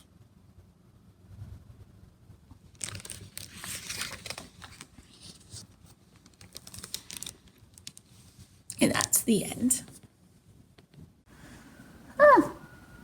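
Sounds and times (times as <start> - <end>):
book pages turning: 2.7 - 9.1.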